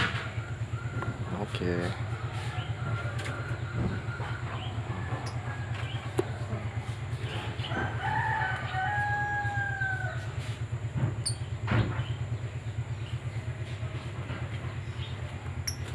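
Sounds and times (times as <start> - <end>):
rooster crowing: 2.1 - 10.7.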